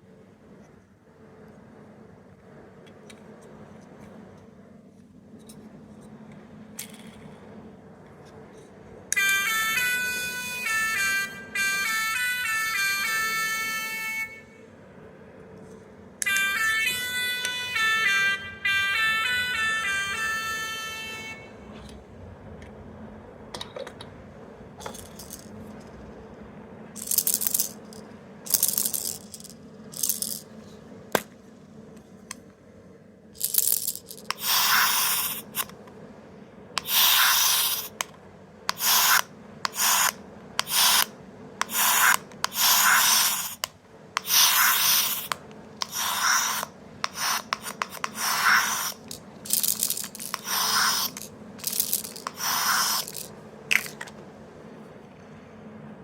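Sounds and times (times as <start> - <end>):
toy hissing rasping bursts: 34.3 - 35.7, 36.8 - 38.1, 38.7 - 53.3.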